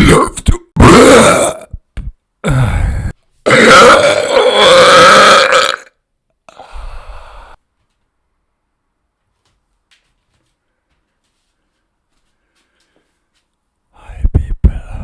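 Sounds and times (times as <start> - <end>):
person burping: 0.0 - 6.7.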